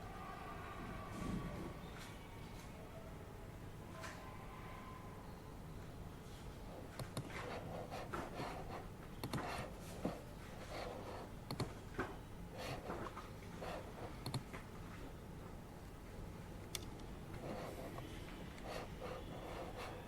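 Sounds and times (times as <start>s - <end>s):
air purifier humming: 5.5s - 20.0s
pen scratching on paper: 7.3s - 11.3s, 12.5s - 14.2s, 17.4s - 20.0s.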